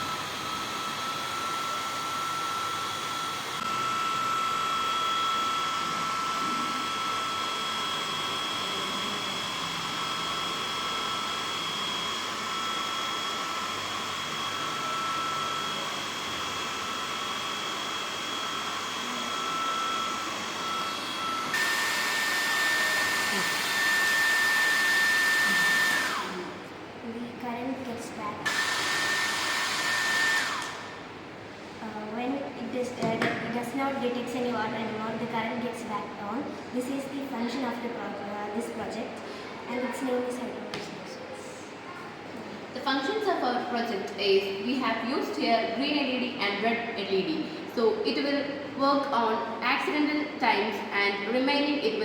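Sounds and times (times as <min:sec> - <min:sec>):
hair dryer running: 0:00.0 - 0:26.8, 0:28.4 - 0:31.3.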